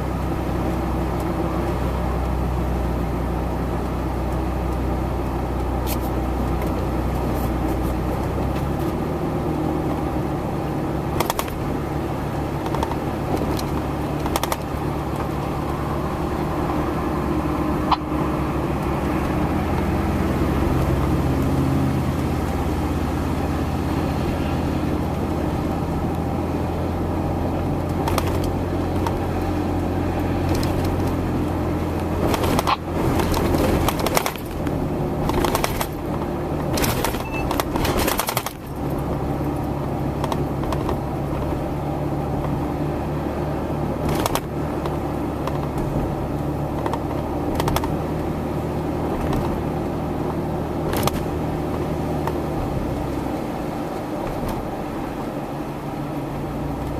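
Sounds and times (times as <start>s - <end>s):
knocks and clatter: 27.9s - 29.2s.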